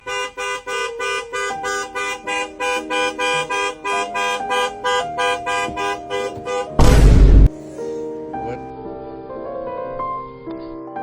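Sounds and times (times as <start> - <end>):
rapid short honks: 0.0 - 7.5
sudden loud noisy blast: 6.8 - 7.5.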